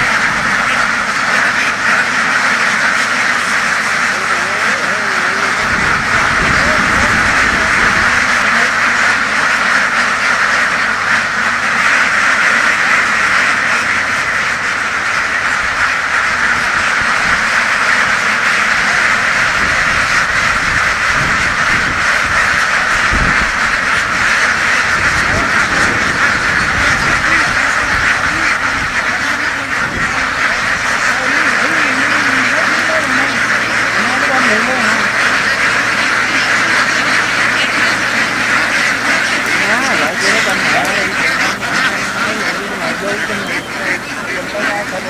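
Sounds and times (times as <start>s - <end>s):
ducks quacking: 0.0s - 45.0s.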